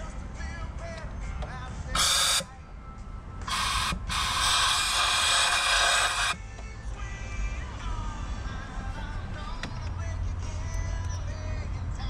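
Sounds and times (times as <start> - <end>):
hissing spray bursts: 3.5 - 6.4.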